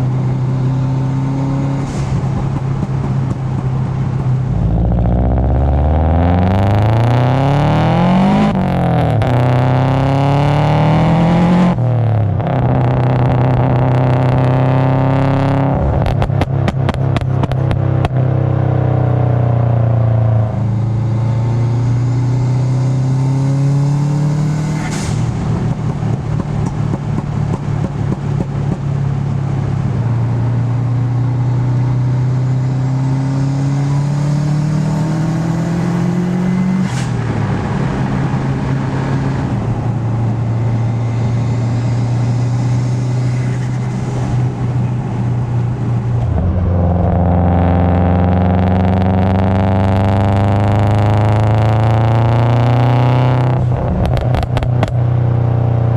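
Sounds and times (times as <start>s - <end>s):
turbocharged car engine pulling hard: 0.0s - 18.6s, 19.3s - 55.7s
rapid exhaust crackle: 1.7s - 6.1s, 24.8s - 31.1s, 53.6s - 55.6s.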